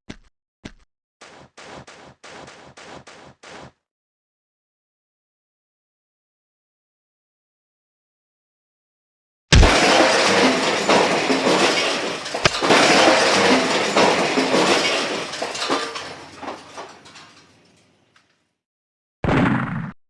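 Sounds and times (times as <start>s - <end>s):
loud crash: 9.5s - 17.4s
debris clattering and clinking: 9.6s - 18.3s.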